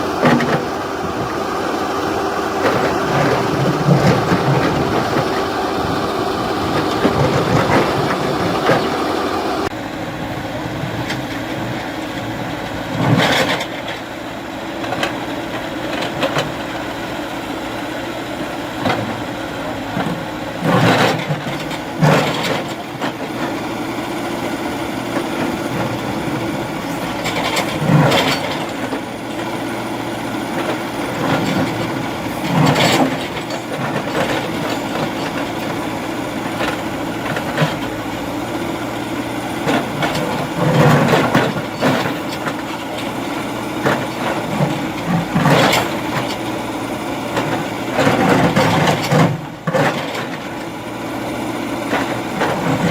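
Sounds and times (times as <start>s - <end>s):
backhoe diesel engine running: 0.0s - 52.9s.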